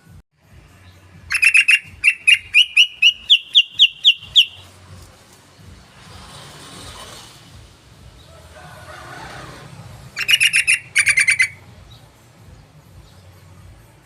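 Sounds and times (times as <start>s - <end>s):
bird chattering call: 1.3s - 4.7s, 10.2s - 11.6s.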